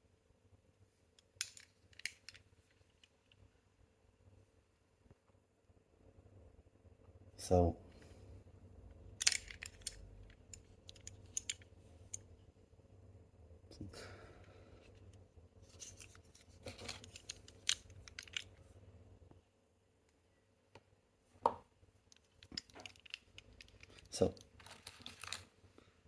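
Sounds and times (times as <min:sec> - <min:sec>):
low steady hum: 0:00.0 - 0:26.0
fidget toys clicking and scraping: 0:09.2 - 0:12.2, 0:14.8 - 0:18.6, 0:22.1 - 0:25.5.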